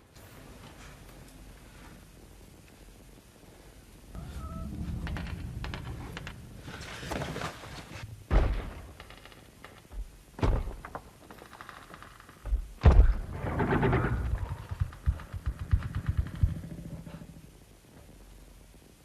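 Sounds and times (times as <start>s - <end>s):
rumbling clatter: 4.1s - 9.3s, 12.9s - 17.5s
low thuds: 7.9s - 9.1s.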